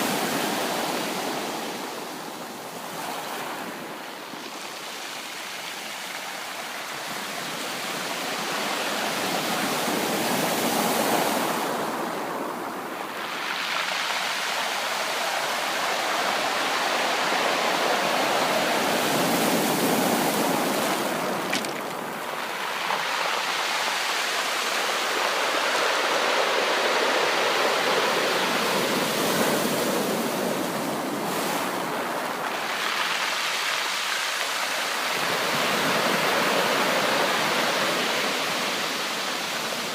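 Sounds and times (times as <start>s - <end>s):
sea waves washing: 10.0s - 39.9s.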